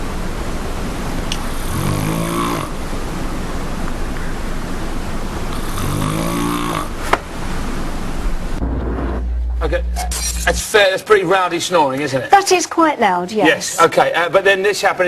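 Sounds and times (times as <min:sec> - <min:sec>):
steady background hiss: 0:00.0 - 0:15.0
woman snoring: 0:01.5 - 0:02.8, 0:05.6 - 0:07.0.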